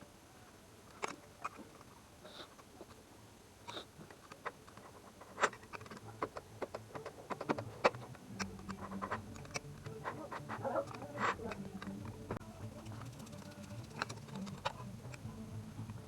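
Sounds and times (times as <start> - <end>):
metal parts clicking and tapping: 4.1 - 16.0.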